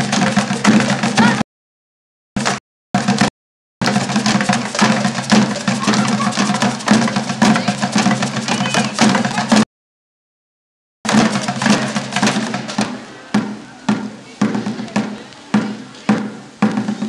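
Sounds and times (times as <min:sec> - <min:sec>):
samba percussion group drumming: 0:00.0 - 0:01.4, 0:02.4 - 0:09.6, 0:11.1 - 0:17.0.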